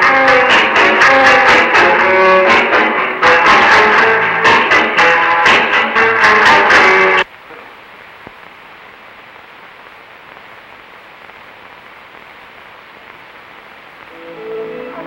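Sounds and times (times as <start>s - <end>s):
music with held notes: 0.0s - 7.2s, 14.1s - 15.0s
film soundtrack hiss: 0.0s - 15.0s
faint click: 8.2s - 8.5s.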